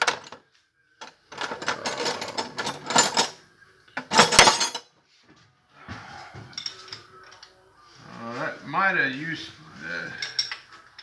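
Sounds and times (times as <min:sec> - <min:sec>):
metal hand tools clinking: 0:00.0 - 0:00.4, 0:01.0 - 0:03.4, 0:04.0 - 0:04.8, 0:10.2 - 0:10.7.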